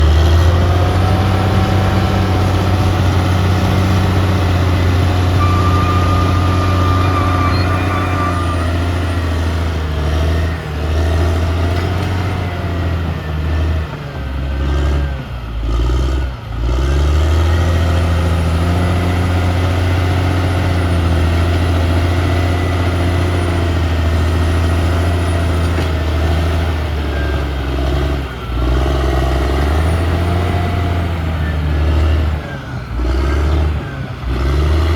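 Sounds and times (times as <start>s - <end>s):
bulldozer diesel engine running: 0.0s - 34.9s
faint high whine: 5.4s - 9.4s.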